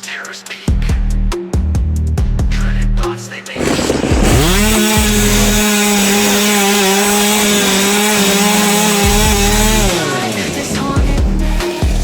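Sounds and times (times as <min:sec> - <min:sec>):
chainsaw engine revving: 0:03.6 - 0:12.0.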